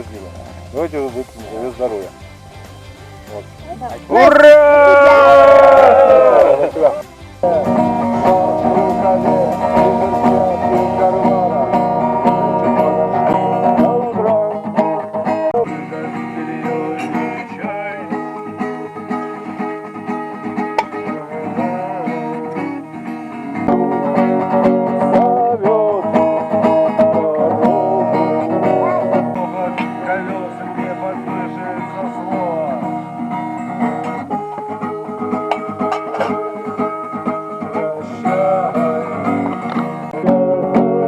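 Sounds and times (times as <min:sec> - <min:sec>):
bluegrass plucked string music: 0:00.0 - 0:41.0.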